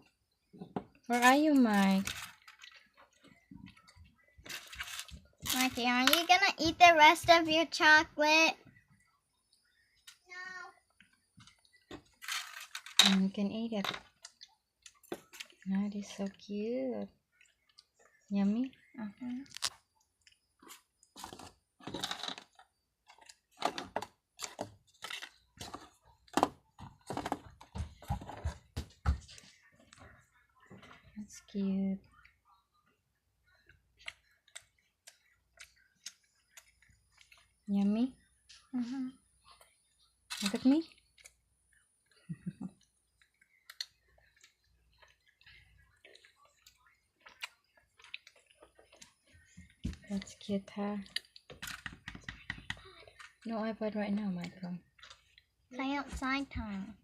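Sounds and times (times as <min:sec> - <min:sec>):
plastic toys and packaging clicking: 0:01.1 - 0:06.5, 0:11.0 - 0:15.8, 0:19.2 - 0:28.5, 0:40.3 - 0:41.5, 0:43.1 - 0:56.4.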